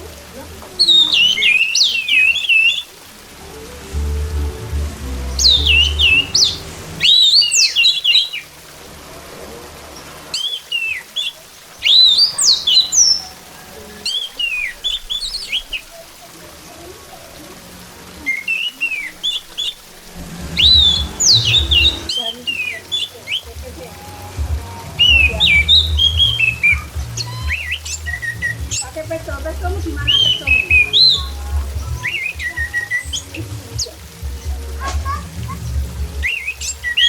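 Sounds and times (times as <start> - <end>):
thrush singing whistled notes: 0.8 - 8.7, 10.3 - 16.0, 18.2 - 37.0
low hum: 3.3 - 7.3, 19.8 - 22.1.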